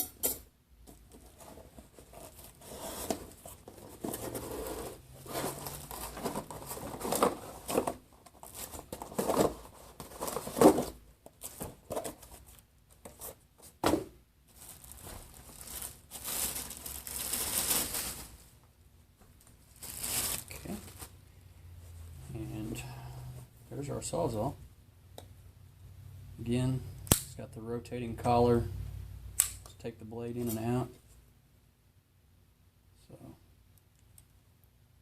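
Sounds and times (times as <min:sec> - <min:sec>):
plastic and paper rustling: 0:01.0 - 0:13.8, 0:14.5 - 0:18.6, 0:19.4 - 0:21.2.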